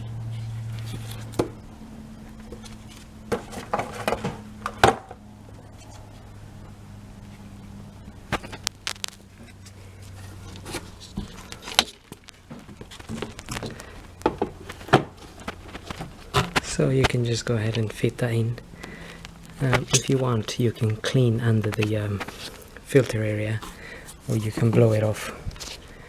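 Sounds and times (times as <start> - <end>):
steady low hum: 0.0 - 26.0
hands handling plastic housing: 8.3 - 18.2, 18.8 - 26.0.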